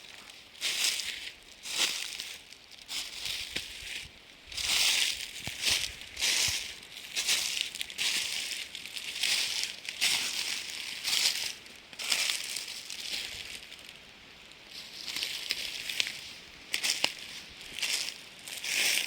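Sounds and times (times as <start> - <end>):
footsteps crunching dry leaves: 0.0 - 19.0.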